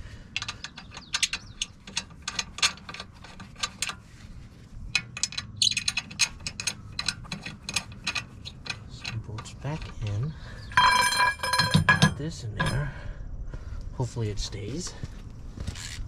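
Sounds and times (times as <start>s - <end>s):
ratchet wrench clicking: 0.4s - 4.0s, 4.9s - 9.9s.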